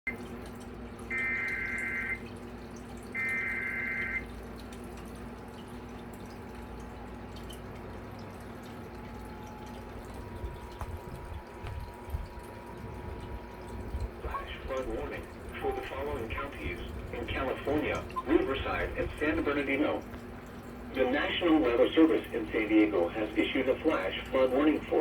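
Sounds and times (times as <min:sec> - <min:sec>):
steady low hum: 0:00.1 - 0:25.0
coded data tone bursts: 0:01.1 - 0:02.2, 0:03.1 - 0:04.3.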